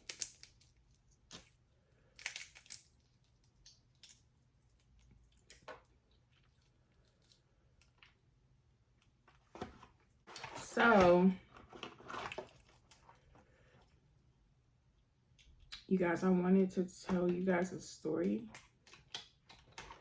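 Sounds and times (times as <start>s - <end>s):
shells cracking and peeling: 0.0s - 8.2s, 18.4s - 20.0s.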